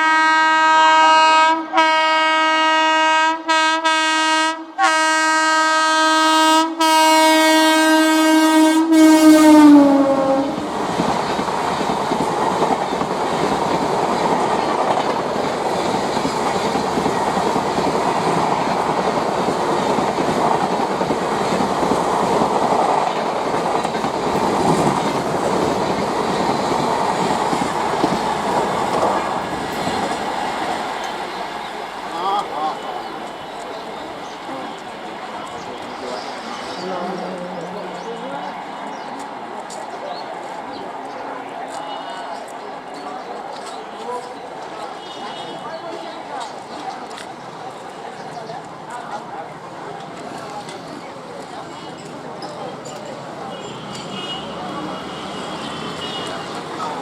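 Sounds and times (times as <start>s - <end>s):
locomotive horn blasts: 0.0s - 10.7s, 53.5s - 56.6s
train coaches rushing past: 5.0s - 57.0s.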